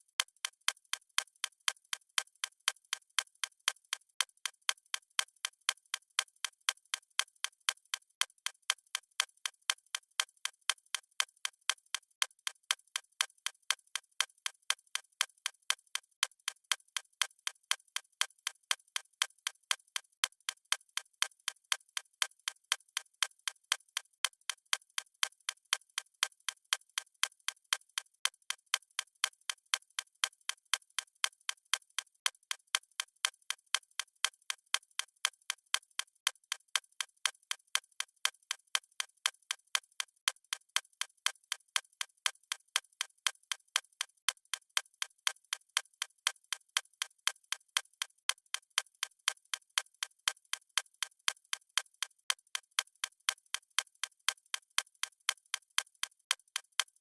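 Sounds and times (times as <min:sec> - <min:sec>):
watch ticking: 0:27.7 - 0:57.0.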